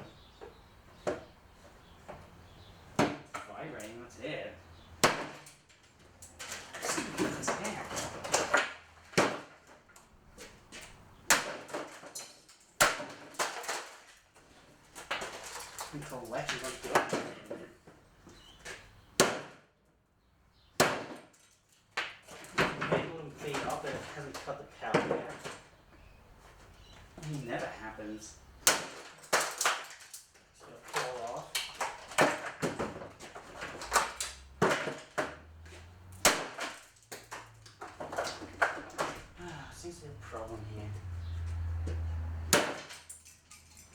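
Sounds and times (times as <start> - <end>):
loud sharp hits on plastic fan: 2.9 - 3.4, 5.0 - 5.5, 6.6 - 9.7, 11.2 - 12.0, 12.8 - 14.0, 19.1 - 19.7, 20.7 - 21.4, 28.6 - 30.0, 31.0 - 39.4, 42.5 - 43.0
plastic knocking and rattling: 28.6 - 39.4.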